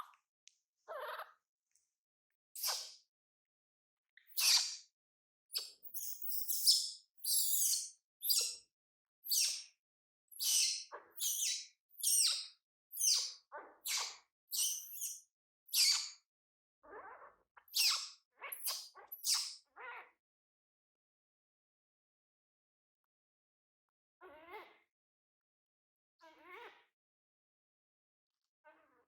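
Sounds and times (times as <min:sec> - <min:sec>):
baby monkey squeaking cries: 0:04.4 - 0:04.8, 0:05.6 - 0:08.6, 0:09.3 - 0:09.7, 0:10.4 - 0:16.1, 0:17.8 - 0:20.0.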